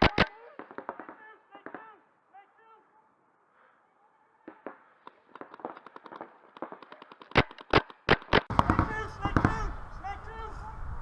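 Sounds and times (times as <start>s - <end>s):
paintball markers firing: 0.0s - 1.9s, 4.4s - 9.6s.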